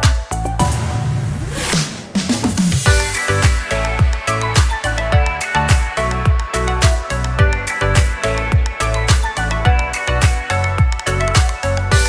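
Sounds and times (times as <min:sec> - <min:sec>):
electronic music: 0:00.0 - 0:12.0
falling bass glides: 0:00.4 - 0:08.0
rising swoosh: 0:00.5 - 0:04.4.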